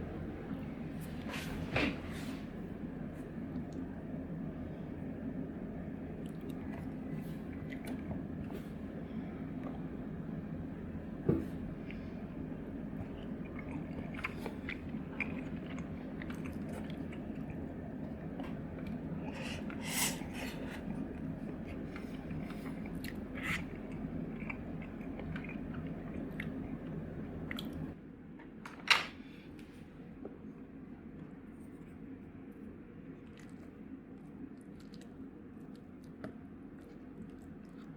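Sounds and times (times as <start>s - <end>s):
chewing: 6.2s - 8.8s, 12.9s - 28.0s, 33.2s - 37.9s.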